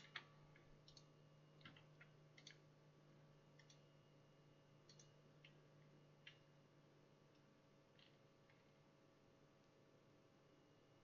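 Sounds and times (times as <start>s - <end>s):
computer mouse clicks: 0.0s - 2.6s, 3.5s - 3.8s, 4.8s - 5.6s, 6.2s - 6.5s, 7.3s - 8.7s
low steady hum: 0.0s - 11.0s.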